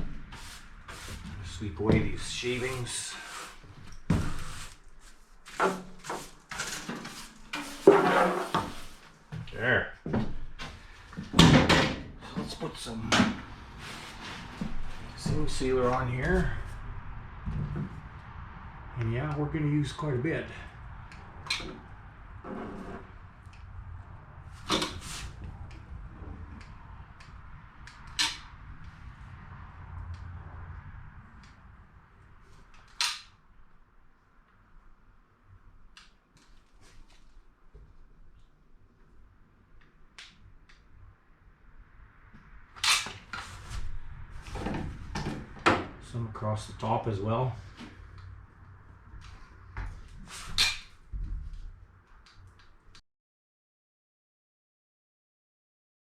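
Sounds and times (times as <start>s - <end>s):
brush sweeping shavings: 0.3s - 9.1s.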